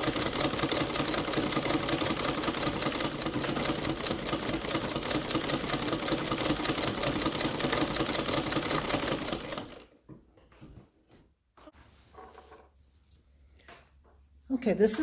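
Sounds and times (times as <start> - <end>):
treadle sewing machine clatter: 0.0 - 9.9.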